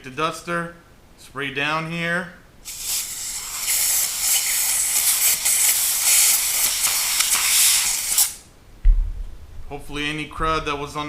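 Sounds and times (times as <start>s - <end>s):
compressed air spraying hiss: 2.6s - 8.5s.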